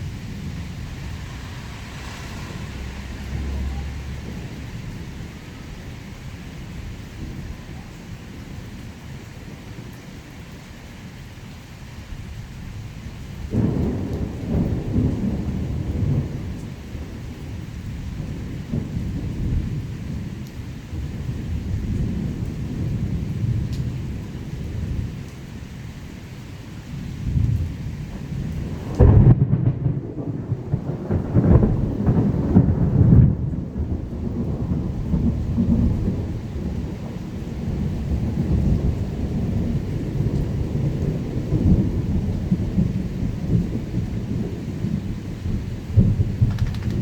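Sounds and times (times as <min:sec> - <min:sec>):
thunder rolling: 0:00.0 - 0:10.0, 0:13.4 - 0:20.4, 0:27.2 - 0:47.0
steady rain: 0:00.0 - 0:47.0.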